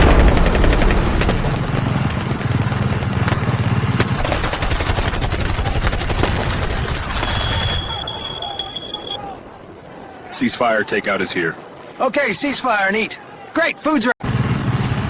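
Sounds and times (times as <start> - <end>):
rapid machine-gun fire: 0.0 - 8.6.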